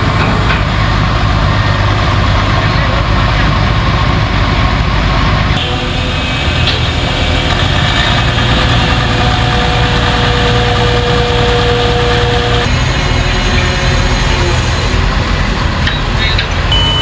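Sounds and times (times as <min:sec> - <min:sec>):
heavy diesel engine running: 0:00.0 - 0:17.0
steady whine: 0:02.6 - 0:17.0.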